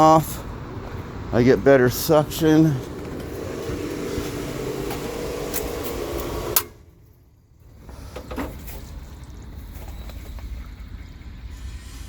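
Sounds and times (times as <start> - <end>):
pool pump motor humming: 1.9 - 6.9.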